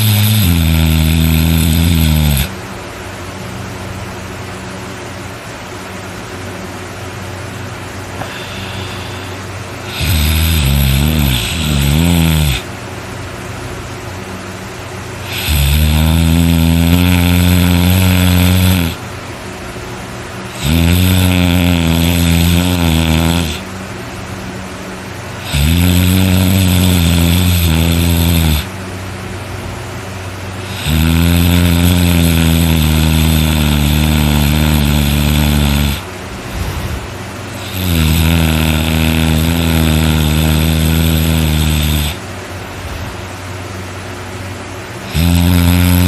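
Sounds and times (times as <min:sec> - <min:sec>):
person snoring loudly: 0:00.0 - 0:02.6, 0:08.2 - 0:12.7, 0:15.2 - 0:19.0, 0:20.5 - 0:23.7, 0:25.4 - 0:28.8, 0:30.6 - 0:42.2, 0:42.8 - 0:43.3, 0:45.0 - 0:46.0.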